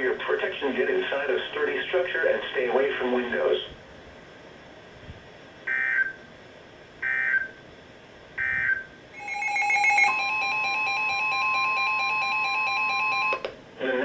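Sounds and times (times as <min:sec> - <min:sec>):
steady warning alarm tone: 0:05.7 - 0:06.2, 0:07.0 - 0:07.6, 0:08.4 - 0:13.4.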